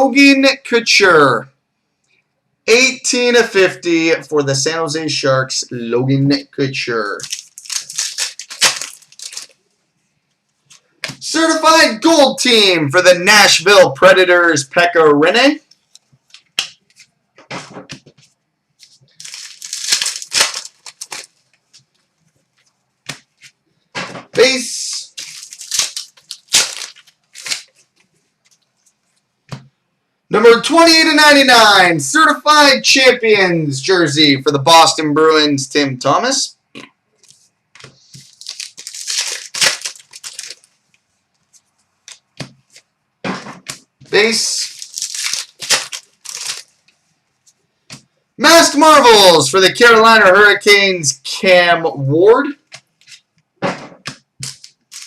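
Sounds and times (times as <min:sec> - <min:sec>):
plastic wrapper crinkling: 0:07.0 - 0:09.8, 0:15.6 - 0:17.1, 0:18.1 - 0:23.6, 0:24.4 - 0:29.3, 0:37.2 - 0:42.9, 0:43.7 - 0:48.1, 0:52.6 - 0:53.4, 0:54.0 - 0:55.0.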